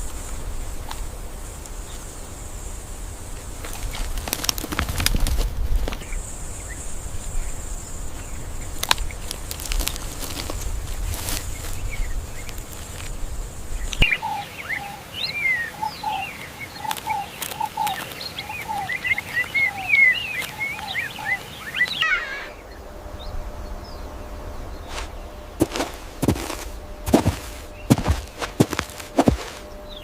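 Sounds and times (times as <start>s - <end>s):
faint steady hum: 0.0s - 30.0s
low whistled bird notes: 13.7s - 16.3s, 18.7s - 30.0s
birds chirping and calling: 13.8s - 22.8s.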